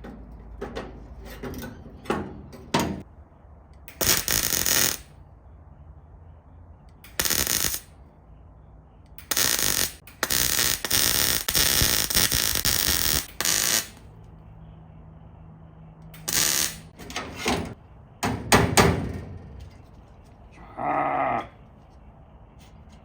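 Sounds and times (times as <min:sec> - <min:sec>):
welder bursts: 0:03.9 - 0:05.1, 0:07.0 - 0:07.9, 0:09.2 - 0:14.0, 0:16.1 - 0:17.2.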